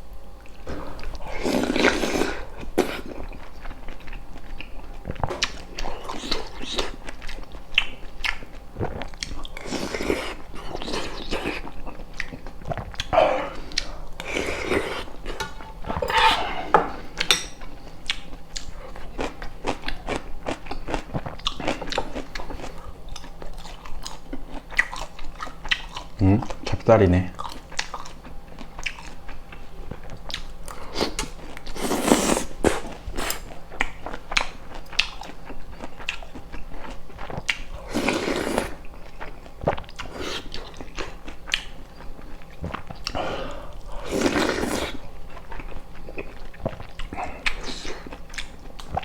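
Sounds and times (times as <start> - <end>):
person chewing crunchy food: 0.4 - 26.8, 27.4 - 49.0
cutlery clinking on dishes: 15.3 - 17.6.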